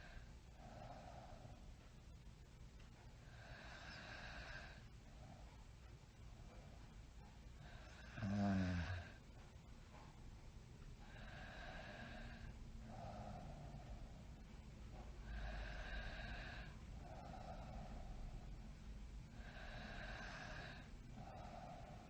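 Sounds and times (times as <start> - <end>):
quiet breathing: 0.0 - 22.0
person snoring: 7.7 - 9.2, 19.4 - 22.0.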